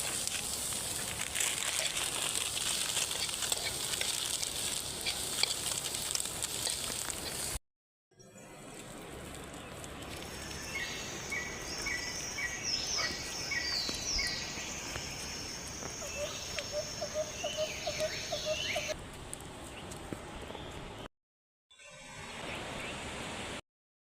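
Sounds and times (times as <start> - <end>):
steady outdoor hiss: 0.0 - 7.6, 8.3 - 21.1, 21.9 - 23.6
birds chirping: 9.5 - 19.0.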